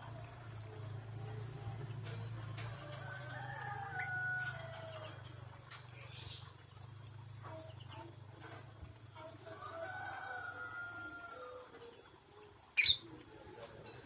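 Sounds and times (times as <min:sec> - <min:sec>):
low steady hum: 0:00.0 - 0:14.0
rooster crowing: 0:02.8 - 0:05.2, 0:09.6 - 0:11.6.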